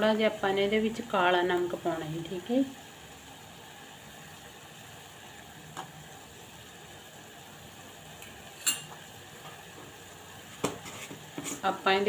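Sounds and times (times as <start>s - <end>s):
pot boiling with steady hiss: 0.0s - 12.0s
spoon clinking against pot: 8.6s - 9.0s.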